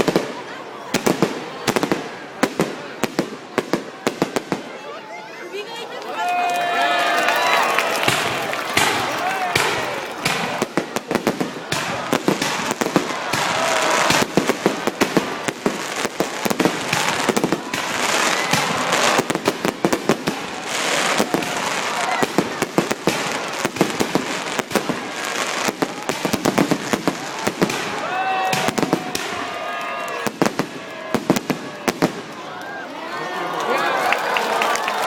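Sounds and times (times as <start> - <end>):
faint voices: 0.0 - 35.0
fireworks crackling pops: 6.0 - 32.7.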